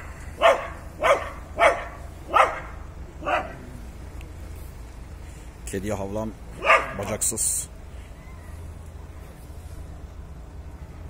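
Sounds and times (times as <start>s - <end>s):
dog barking: 0.4s - 3.6s, 6.6s - 7.2s.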